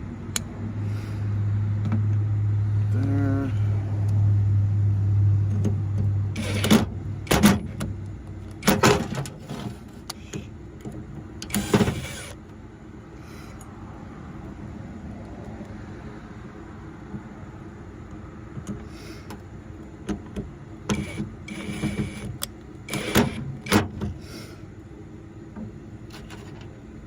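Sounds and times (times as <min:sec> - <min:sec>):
small electric motor humming: 0:06.3 - 0:06.7, 0:11.5 - 0:12.4, 0:20.9 - 0:22.2, 0:22.9 - 0:23.4.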